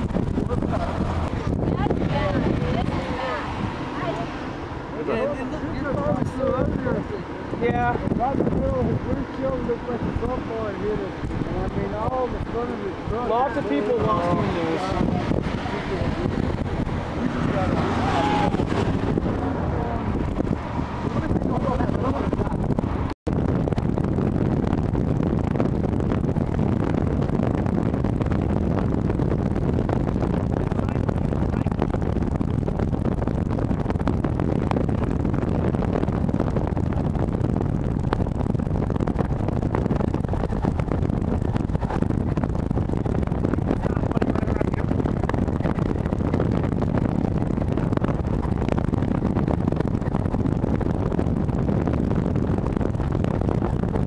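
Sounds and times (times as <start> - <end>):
car interior road noise: 0.0 - 54.0.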